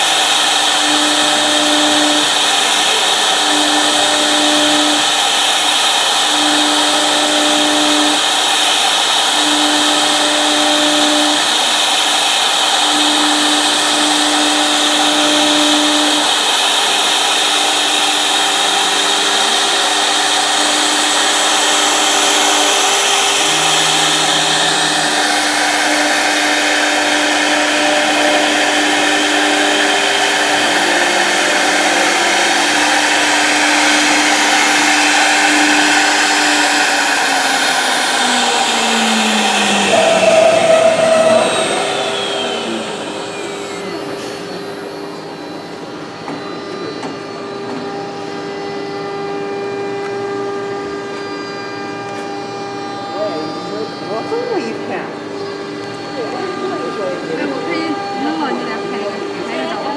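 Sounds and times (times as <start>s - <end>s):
cnc router hiss and whine: 0.0s - 59.9s
intermittent hum: 21.4s - 46.0s.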